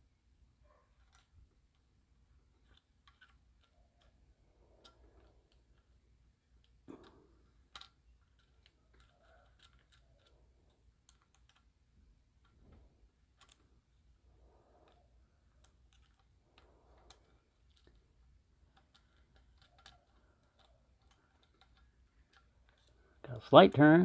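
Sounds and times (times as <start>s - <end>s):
lock pick clicking and scraping: 1.0s - 11.8s, 12.4s - 13.8s, 14.6s - 23.2s.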